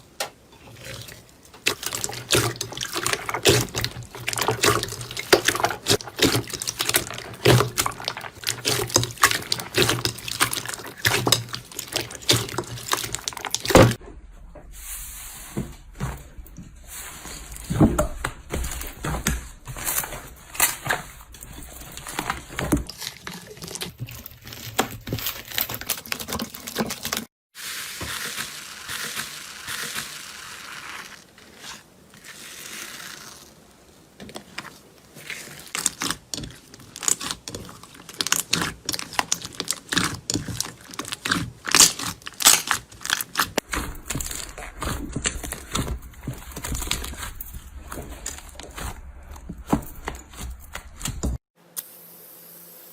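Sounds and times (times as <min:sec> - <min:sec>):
slime crackling and popping: 0:01.6 - 0:14.0, 0:35.7 - 0:47.3.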